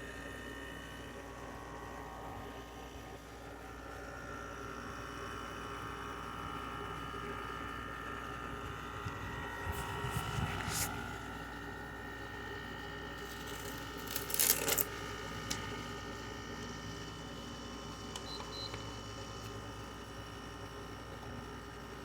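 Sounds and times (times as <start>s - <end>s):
air conditioner humming: 0.0s - 22.0s.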